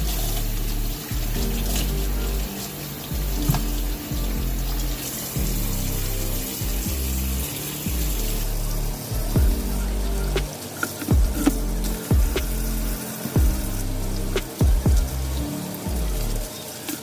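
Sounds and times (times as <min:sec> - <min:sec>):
background music: 0:00.0 - 0:17.0
tap running into sink: 0:03.1 - 0:04.2
knocks against sink: 0:03.4 - 0:03.7.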